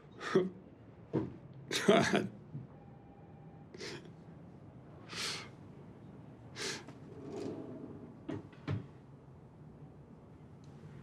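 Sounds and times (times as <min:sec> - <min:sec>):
man breathing heavily: 0:05.1 - 0:05.5, 0:06.6 - 0:06.9.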